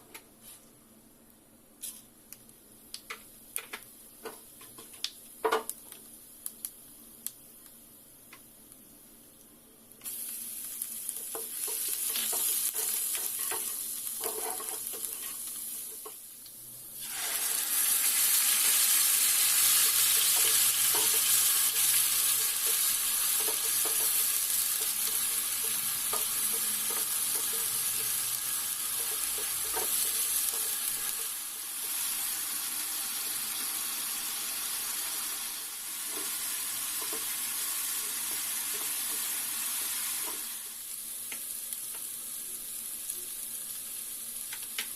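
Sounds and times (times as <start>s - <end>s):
food sizzling in hot oil: 10.0s - 44.9s
spoon scraping pan: 11.6s - 15.5s.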